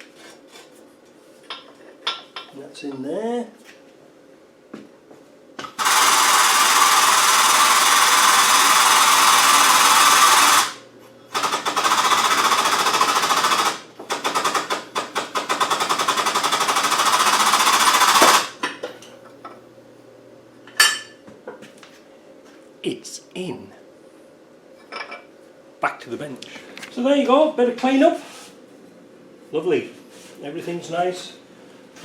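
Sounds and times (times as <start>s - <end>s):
powered shop press chattering: 5.6s - 18.8s.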